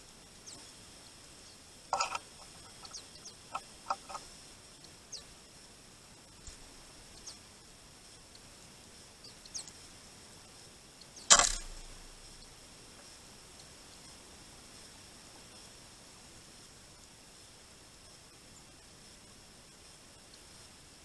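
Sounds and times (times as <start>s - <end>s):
small birds calling: 0.0s - 12.8s.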